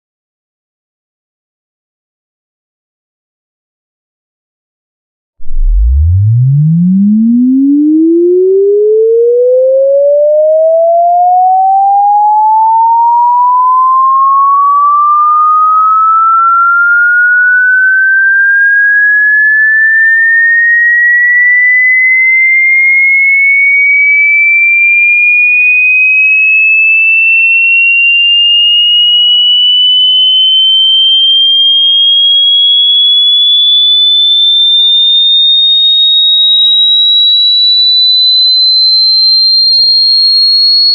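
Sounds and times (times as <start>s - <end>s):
rising electronic sine tone: 5.4s - 40.9s.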